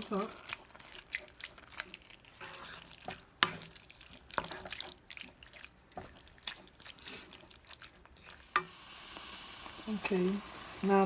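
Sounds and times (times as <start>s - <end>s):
wet squelching stirring: 0.0s - 8.8s.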